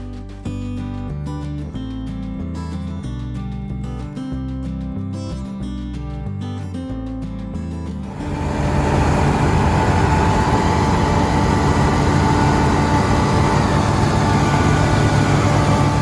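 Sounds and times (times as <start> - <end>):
combine harvester engine rumble: 8.1 - 16.0
machine whine: 8.1 - 16.0.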